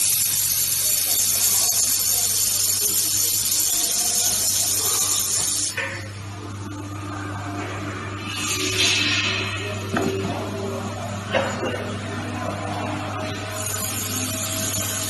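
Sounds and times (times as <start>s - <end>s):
laser welding gun hissing: 0.0s - 5.8s, 13.6s - 15.0s.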